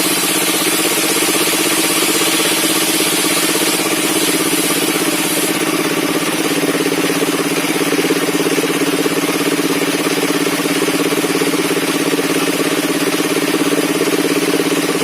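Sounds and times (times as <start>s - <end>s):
sawmill engine running: 0.0s - 15.0s.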